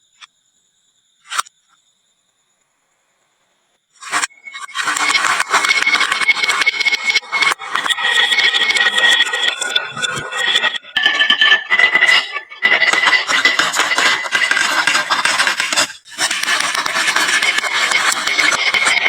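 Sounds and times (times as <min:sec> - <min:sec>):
marbles rattling down wooden run: 0:04.8 - 0:19.0.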